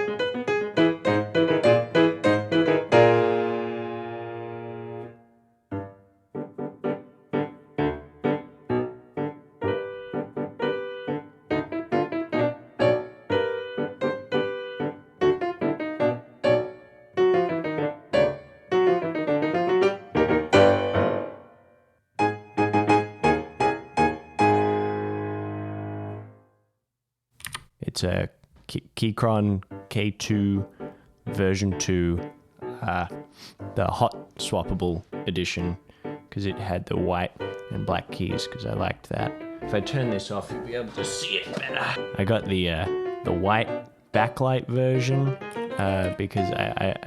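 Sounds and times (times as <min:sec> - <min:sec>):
solo piano music: 0:00.0 - 0:26.5, 0:29.6 - 0:47.0.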